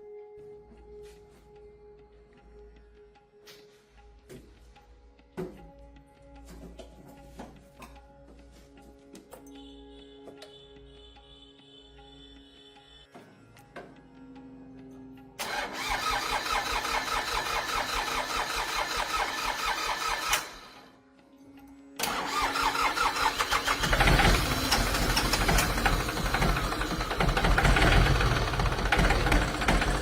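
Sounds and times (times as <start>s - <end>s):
small motorcycle engine running: 23.3s - 30.0s.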